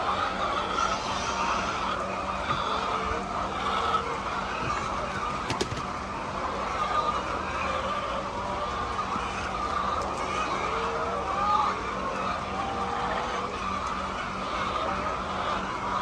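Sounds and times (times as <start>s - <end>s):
hens clucking and squawking: 0.0s - 16.0s.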